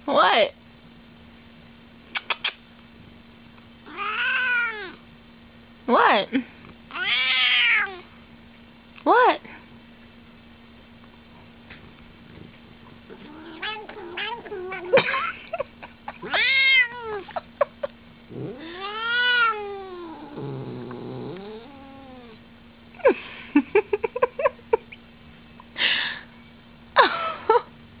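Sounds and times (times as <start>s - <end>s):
cat yowling: 3.8s - 5.0s, 6.9s - 8.0s, 13.1s - 15.6s, 16.2s - 17.5s, 18.4s - 20.4s.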